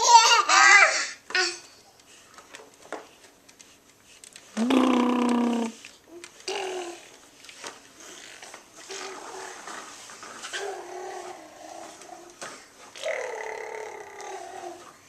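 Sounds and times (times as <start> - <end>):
baby making growly vroom noises: 4.6 - 5.8, 6.4 - 7.1, 10.5 - 12.3, 13.0 - 14.9.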